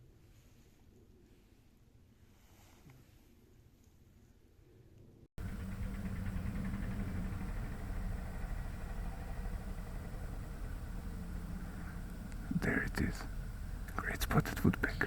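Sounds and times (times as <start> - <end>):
low engine hum: 5.4 - 15.0.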